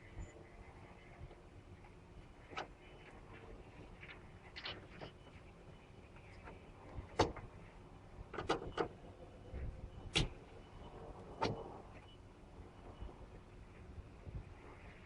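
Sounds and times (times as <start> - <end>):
sharp clicks and knocks: 8.3 - 8.9.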